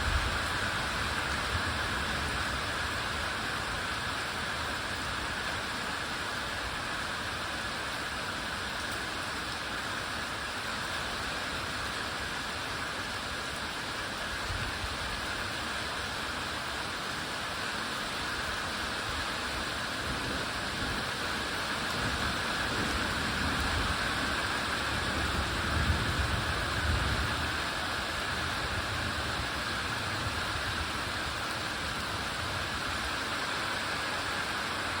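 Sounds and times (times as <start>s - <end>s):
steady rain: 0.0s - 35.0s
low roll of thunder: 20.0s - 27.6s.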